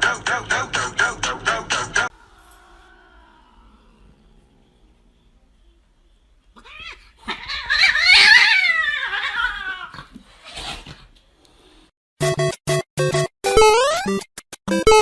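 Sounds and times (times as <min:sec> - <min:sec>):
choppy music: 0:00.0 - 0:02.2
pet animal crying: 0:06.5 - 0:10.8.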